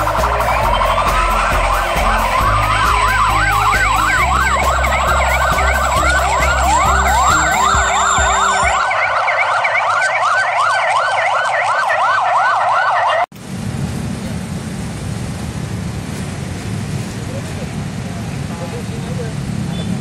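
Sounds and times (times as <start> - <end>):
steady low rumble: 0.0 - 8.8
ambulance sirens: 0.0 - 13.3.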